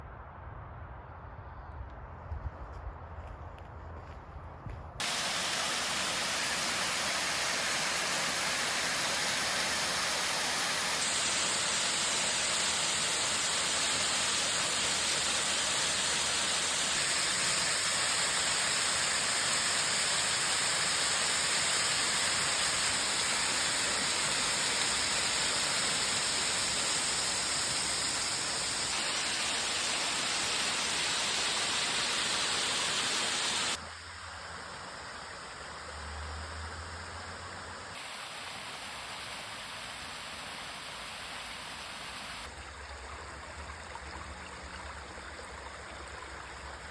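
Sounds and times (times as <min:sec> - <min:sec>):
waterfall rushing: 0:05.0 - 0:33.8, 0:38.0 - 0:42.5.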